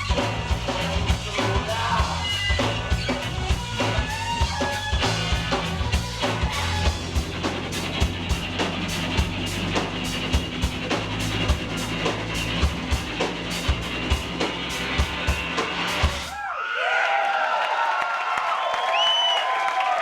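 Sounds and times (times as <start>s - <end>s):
live rock band playing: 0.0s - 16.4s
audience cheering and whistling: 16.3s - 20.0s.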